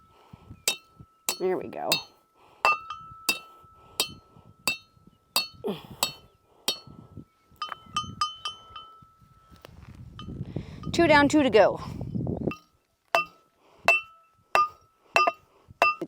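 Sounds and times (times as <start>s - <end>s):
hammer striking metal: 0.7s - 6.9s, 13.9s - 16.0s.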